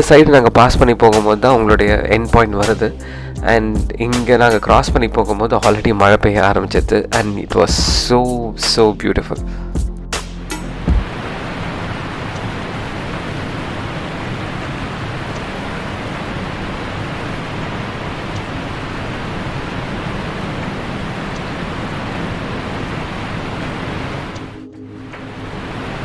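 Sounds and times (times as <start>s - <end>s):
water rushing: 10.6s - 26.0s.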